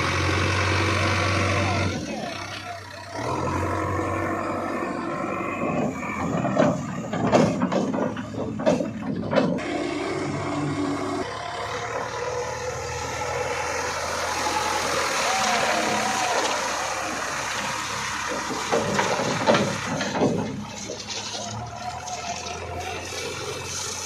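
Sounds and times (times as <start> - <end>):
heavy diesel machinery running: 0.0 - 24.0
sharp metal knocks and clanks: 5.7 - 9.7, 18.1 - 21.6.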